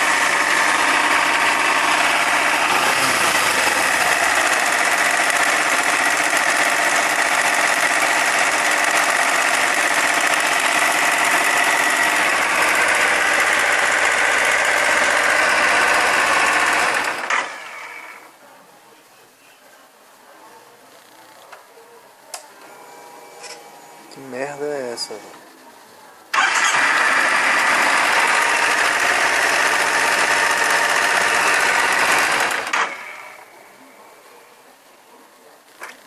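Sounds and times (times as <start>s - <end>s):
motorcycle engine running: 0.0s - 17.3s, 26.4s - 32.8s.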